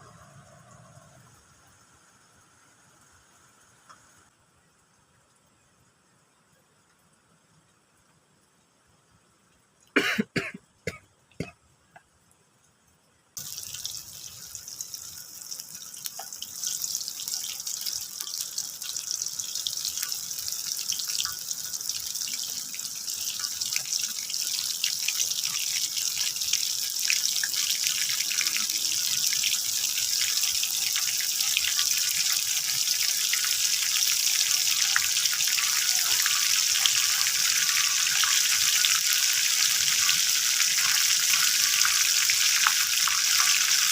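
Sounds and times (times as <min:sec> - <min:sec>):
food frying in hot oil: 0:00.0 - 0:07.2, 0:13.4 - 0:43.9.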